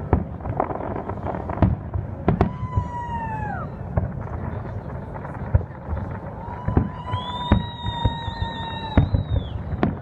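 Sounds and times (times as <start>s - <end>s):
fireworks booming and cracking: 0.0s - 10.0s
steady crackle: 3.8s - 8.2s
firework whistle sliding down: 6.5s - 10.0s.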